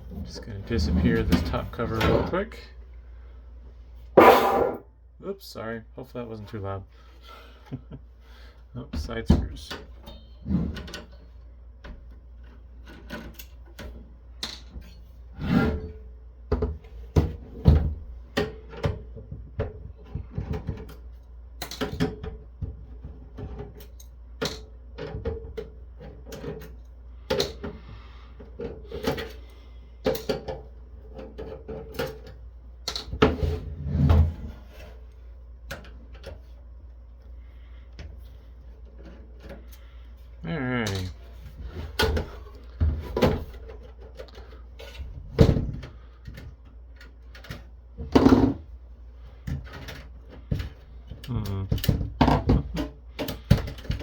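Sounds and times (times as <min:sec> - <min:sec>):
loud thumps: 0:04.2 - 0:04.8
metal parts handled: 0:04.2 - 0:04.8.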